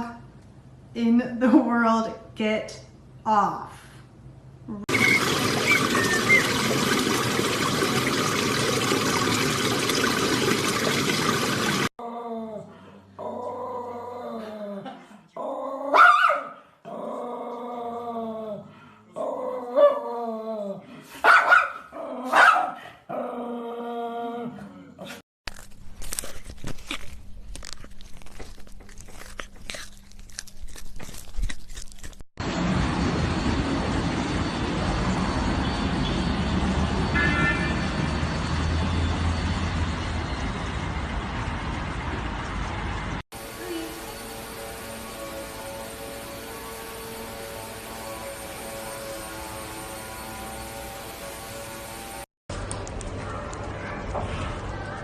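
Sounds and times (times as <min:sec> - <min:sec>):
dog howling and yelping: 0:04.9 - 0:06.7.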